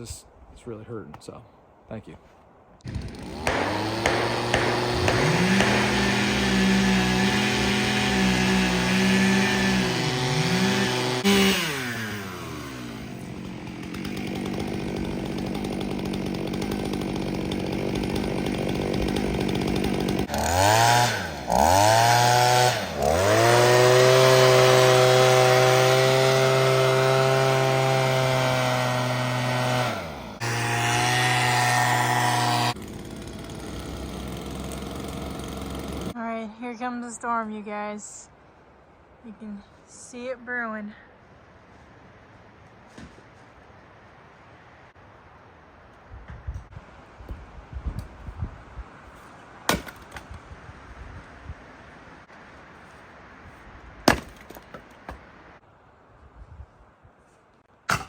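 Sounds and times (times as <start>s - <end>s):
chainsaw revving: 2.8s - 36.2s.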